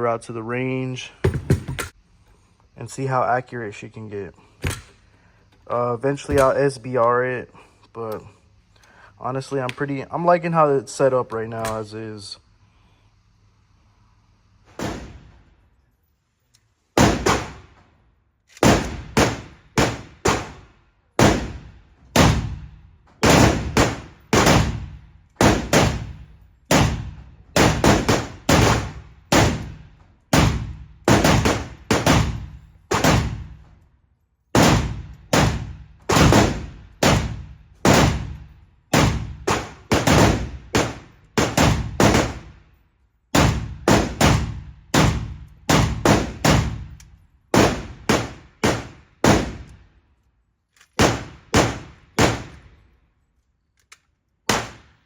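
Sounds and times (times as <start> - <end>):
pistol gunshots with echo: 18.6 - 20.6, 23.2 - 33.5.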